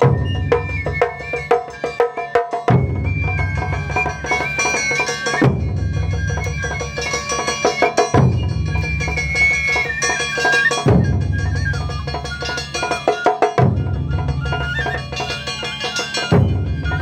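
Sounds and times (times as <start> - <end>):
high held melody: 0.0 - 17.0
fast dense drumming: 2.4 - 17.0
big drum strokes: 5.2 - 9.6, 10.2 - 12.8, 13.5 - 17.0.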